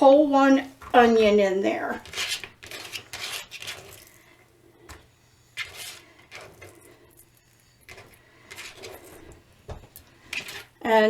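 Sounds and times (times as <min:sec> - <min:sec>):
knife cutting onion on board: 0:02.0 - 0:04.0.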